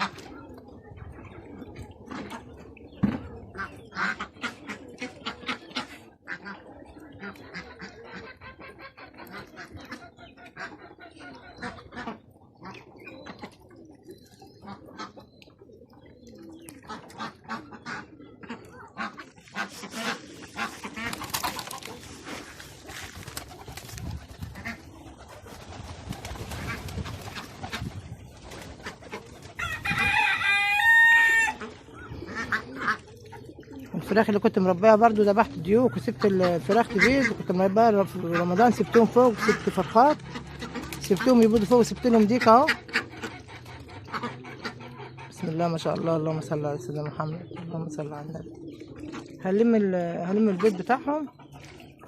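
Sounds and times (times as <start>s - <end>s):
chickens clucking: 0.0s - 52.0s
rooster crowing loudly: 29.6s - 31.6s.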